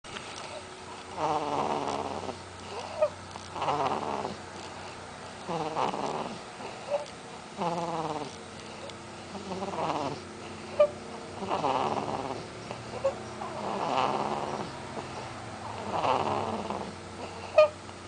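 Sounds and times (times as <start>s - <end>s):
person snoring: 1.1s - 4.4s, 5.5s - 7.0s, 7.6s - 8.3s, 9.3s - 10.2s, 11.4s - 17.7s.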